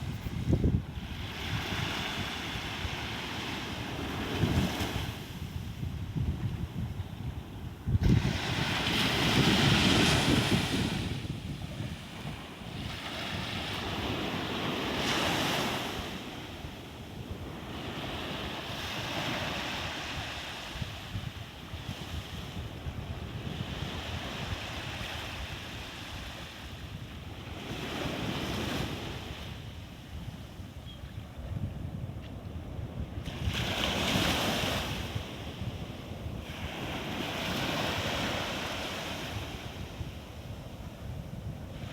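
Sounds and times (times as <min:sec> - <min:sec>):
wind buffeting microphone: 0:00.0 - 0:41.9
ocean waves breaking: 0:08.0 - 0:16.7.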